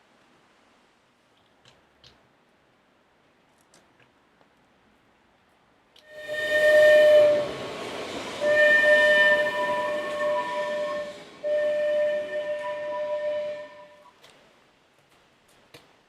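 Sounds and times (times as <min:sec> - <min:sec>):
steam locomotive whistle blasts: 0:06.1 - 0:07.7, 0:08.4 - 0:14.1
hiss of steam: 0:06.1 - 0:14.0.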